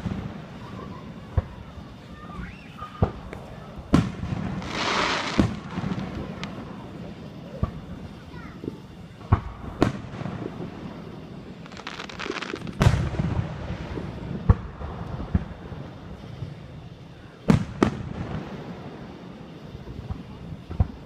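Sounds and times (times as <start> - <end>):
fireworks booming: 0.0 - 1.9, 2.9 - 16.5
fireworks crackling: 0.0 - 21.0.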